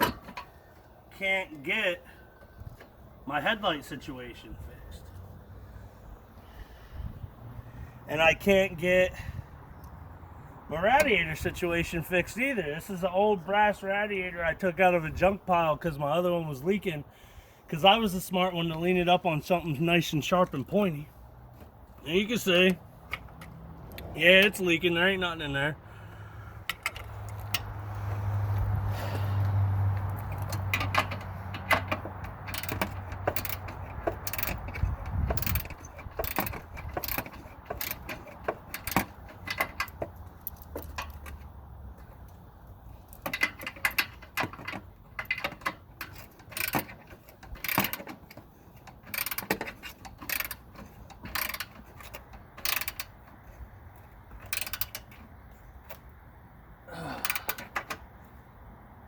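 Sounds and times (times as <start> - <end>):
socket ratchet clicking: 30.0 - 41.3, 43.2 - 48.2, 48.9 - 53.2, 54.4 - 55.2.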